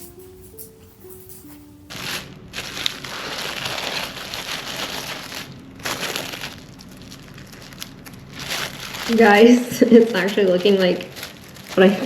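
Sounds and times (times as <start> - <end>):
cling wrap crinkling: 0.0 - 12.0.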